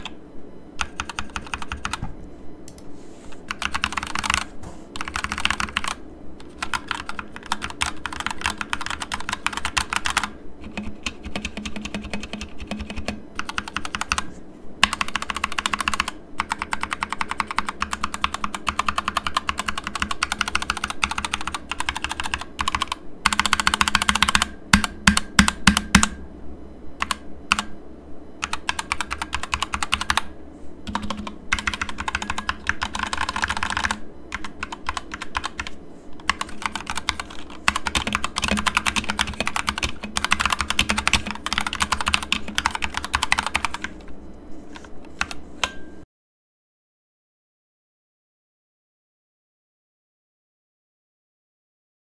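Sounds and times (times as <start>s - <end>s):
mechanical keyboard typing: 0.8s - 2.1s, 3.5s - 26.2s, 27.0s - 27.7s, 28.4s - 30.3s, 30.9s - 44.1s, 44.8s - 45.8s.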